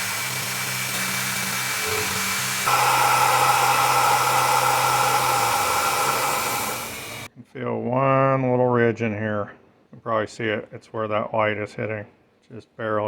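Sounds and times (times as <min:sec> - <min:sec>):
cutter cutting metal: 0:00.0 - 0:07.3
milling machine spindle whir: 0:00.0 - 0:07.3.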